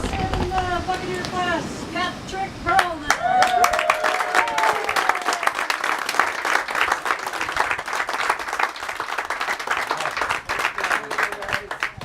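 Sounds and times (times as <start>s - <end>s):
audience applauding: 2.8s - 12.0s.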